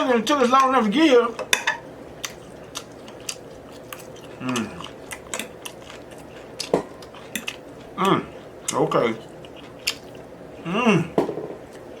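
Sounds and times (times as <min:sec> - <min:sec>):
chewing and mouth sounds: 0:02.2 - 0:10.6.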